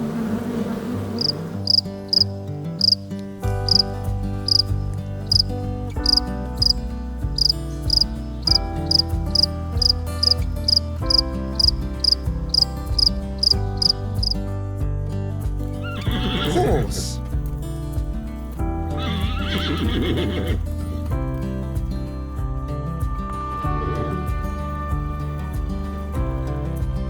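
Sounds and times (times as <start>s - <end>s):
music with slow held chords: 0.0s - 27.0s
high insect chirps: 1.1s - 6.8s, 7.4s - 14.4s.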